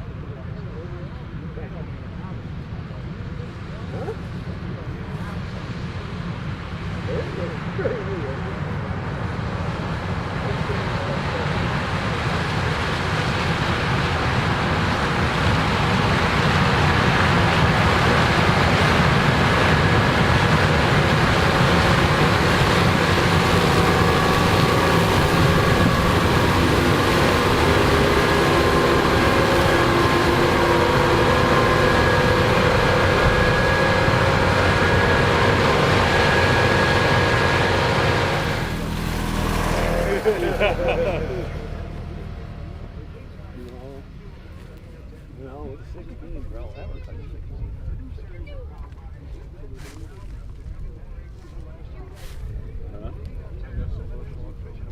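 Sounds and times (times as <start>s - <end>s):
combine harvester running: 0.0s - 54.9s
high machine whine: 13.0s - 45.6s.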